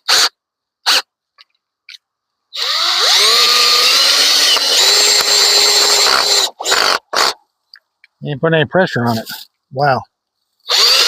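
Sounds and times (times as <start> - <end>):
power drill chainsaw attachment spinning: 2.6 - 7.4, 10.6 - 11.0.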